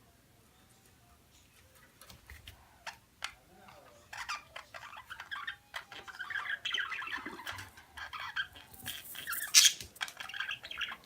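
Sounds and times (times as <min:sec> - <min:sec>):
parakeets chattering and chirping: 0:02.8 - 0:11.0.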